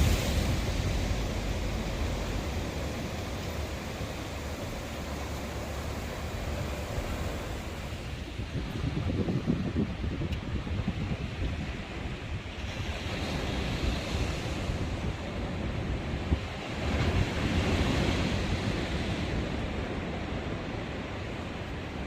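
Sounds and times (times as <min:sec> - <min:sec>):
waves washing on beach: 0:00.0 - 0:22.0
wind buffeting microphone: 0:00.0 - 0:22.0.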